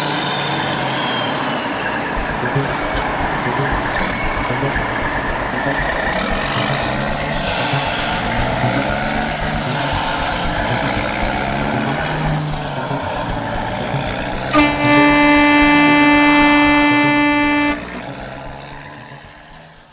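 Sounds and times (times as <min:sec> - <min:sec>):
vehicle engine and road noise: 0:00.0 - 0:19.9
truck horn long note: 0:13.9 - 0:18.2.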